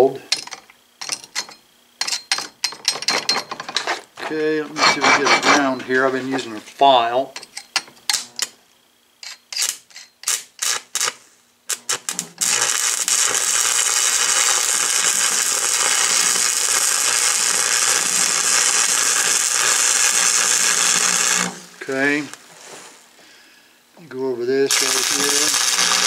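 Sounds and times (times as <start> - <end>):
arc welder crackling hiss: 0.0 - 2.7, 3.6 - 26.0
scraping strokes: 3.6 - 6.8, 22.2 - 23.1.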